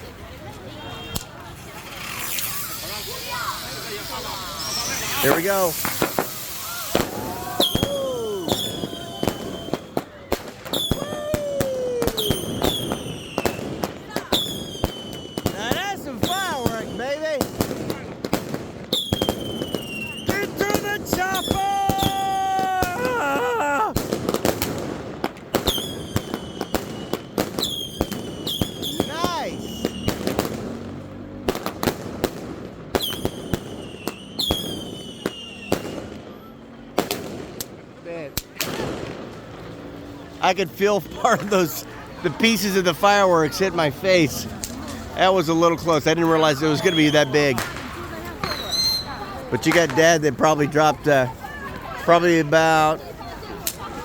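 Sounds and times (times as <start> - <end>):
fireworks bangs: 1.0 - 54.0
firework whistles dropping in pitch: 2.0 - 10.0, 10.7 - 13.6, 18.9 - 20.4, 25.6 - 30.3, 33.0 - 36.1, 48.4 - 49.2.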